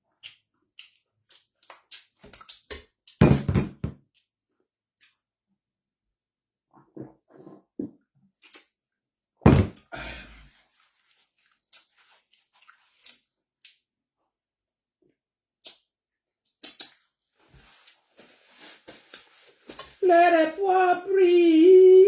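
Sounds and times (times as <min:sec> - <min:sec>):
person chewing: 0:00.2 - 0:02.7, 0:11.5 - 0:13.8, 0:16.5 - 0:17.0.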